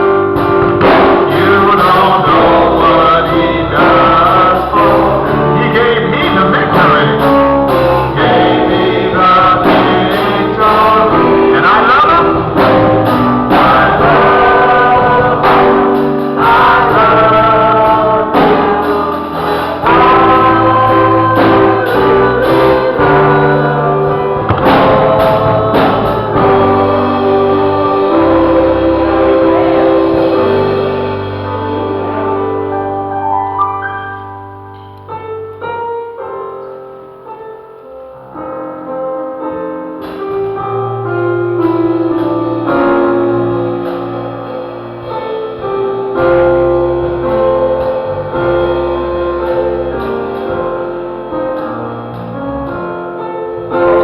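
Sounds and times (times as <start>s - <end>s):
gospel music with keyboard: 0.0s - 54.0s
person singing: 0.8s - 33.1s.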